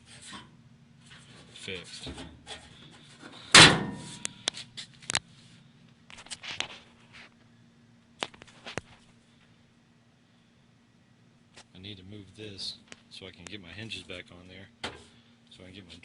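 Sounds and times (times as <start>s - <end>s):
sheet metal bang with ringing: 3.5s - 4.2s.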